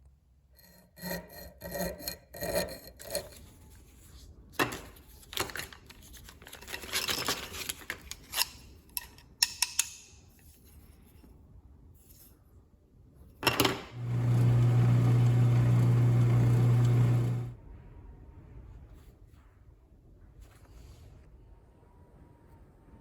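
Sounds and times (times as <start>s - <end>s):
rasping strokes on steel knife: 0.6s - 3.5s.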